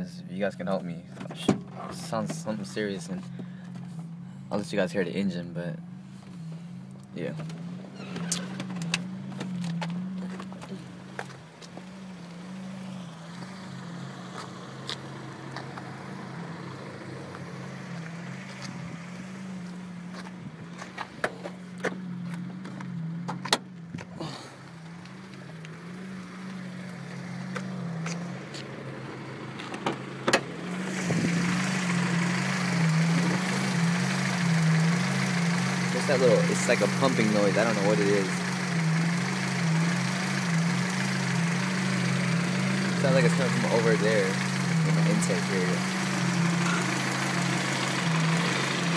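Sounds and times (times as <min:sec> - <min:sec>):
car engine idling: 0:00.0 - 0:48.9.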